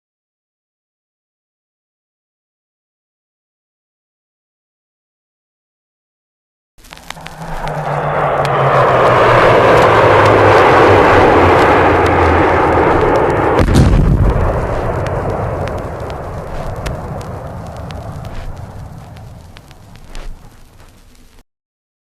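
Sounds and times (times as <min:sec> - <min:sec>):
military jet roaring: 0:06.8 - 0:21.2
heavy explosion rumble: 0:06.9 - 0:21.0.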